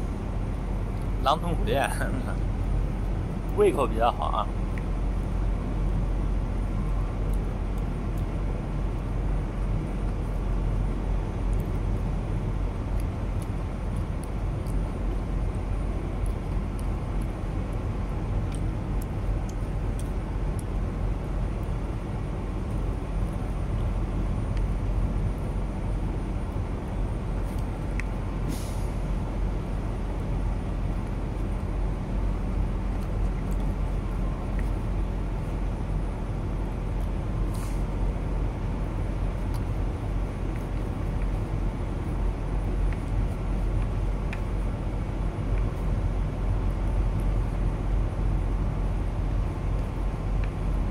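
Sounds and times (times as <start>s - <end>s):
diesel truck engine running: 0.0s - 50.9s
air hiss: 28.5s - 29.0s.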